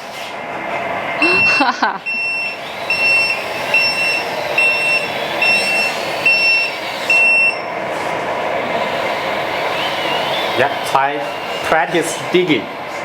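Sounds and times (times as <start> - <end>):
reversing alarm beeps: 1.2 - 7.8.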